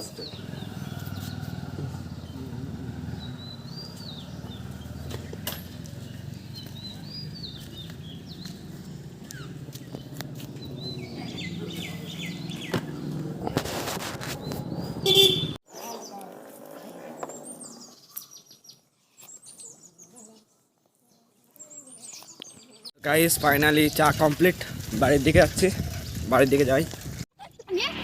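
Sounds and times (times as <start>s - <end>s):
birds chirping: 0.0s - 13.4s, 14.3s - 16.3s, 17.0s - 24.3s.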